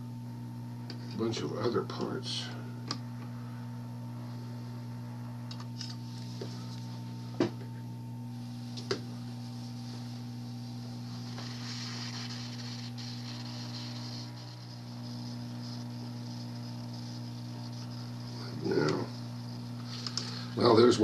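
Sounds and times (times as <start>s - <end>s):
hot-air station humming: 0.0s - 21.0s
faint hiss of air: 10.7s - 20.8s.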